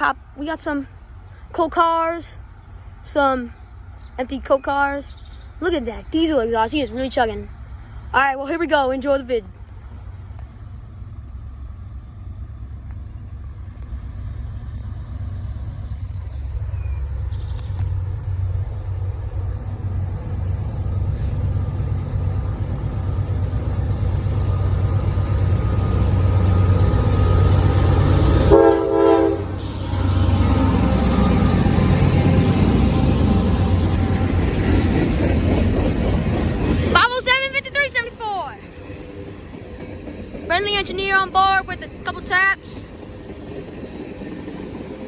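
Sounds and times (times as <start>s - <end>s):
diesel locomotive engine rumble: 0.0s - 45.0s
train horn blast: 28.2s - 31.4s.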